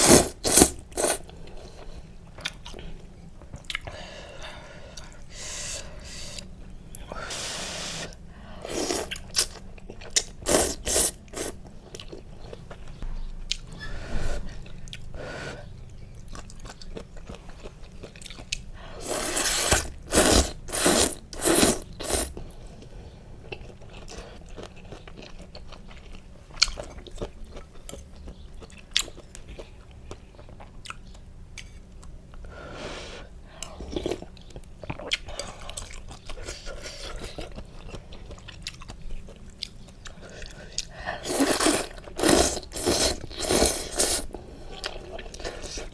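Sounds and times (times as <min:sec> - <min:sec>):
sharp mouth sounds: 0:00.0 - 0:01.2
person chewing and biting: 0:00.0 - 0:01.3, 0:08.7 - 0:12.7, 0:16.3 - 0:22.4, 0:40.4 - 0:45.9.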